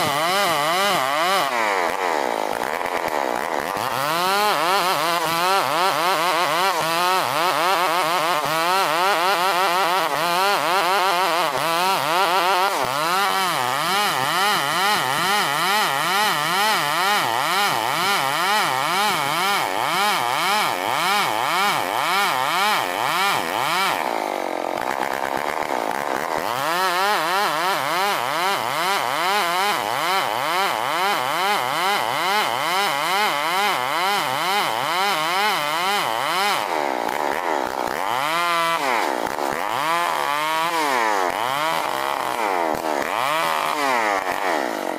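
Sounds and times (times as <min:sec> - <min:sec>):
chainsaw cutting log: 0:00.0 - 0:44.9.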